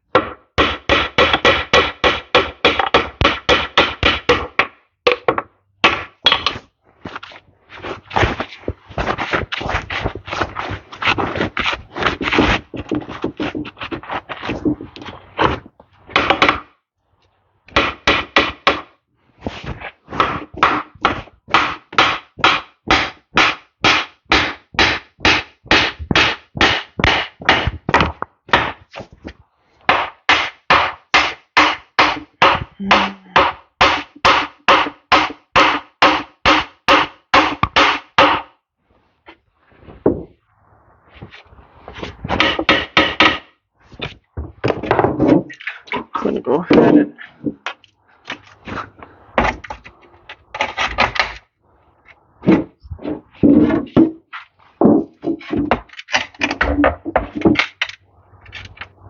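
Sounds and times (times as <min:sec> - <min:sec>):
hammer blows on metal: 0:31.2 - 0:38.4.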